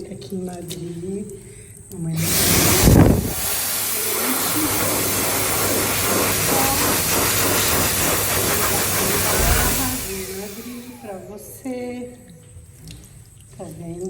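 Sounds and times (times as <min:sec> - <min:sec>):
electric hand dryer blowing: 0:02.2 - 0:11.4.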